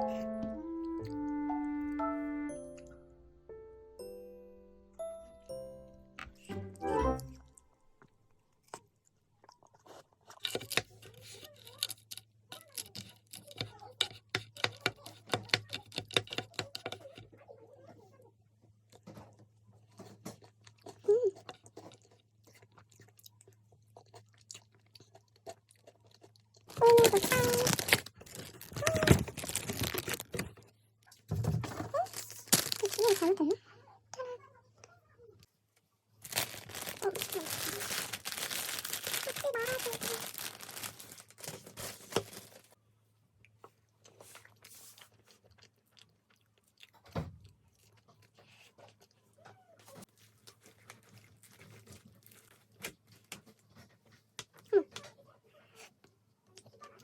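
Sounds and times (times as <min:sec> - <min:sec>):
person chewing crunchy food: 0:08.6 - 0:17.2, 0:19.9 - 0:30.4, 0:36.2 - 0:41.6, 0:43.5 - 0:49.4, 0:50.0 - 0:54.7.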